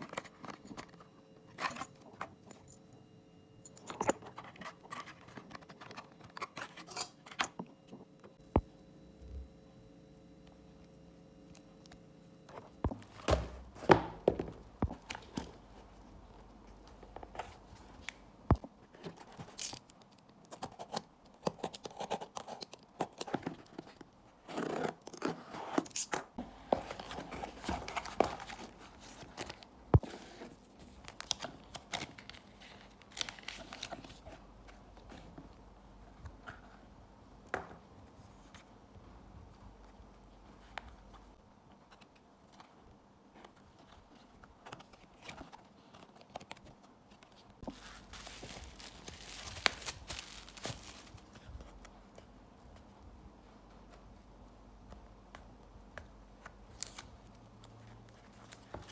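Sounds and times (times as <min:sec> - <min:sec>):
packaging wrapping tearing and crinkling: 0:47.7 - 0:51.5.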